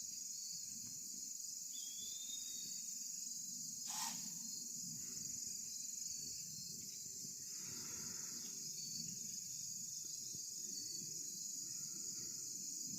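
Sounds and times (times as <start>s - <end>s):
insects chirring: 0.0s - 12.9s
faint short hiss: 3.9s - 4.3s.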